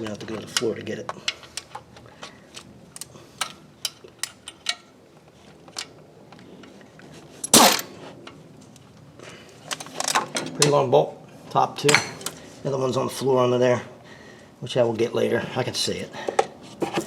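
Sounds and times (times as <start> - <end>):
loud metallic clank: 7.5 - 8.0.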